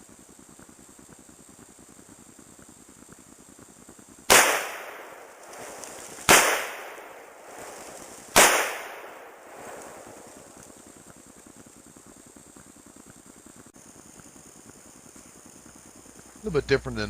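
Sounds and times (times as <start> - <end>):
rifle shots with echo: 4.3 - 10.9.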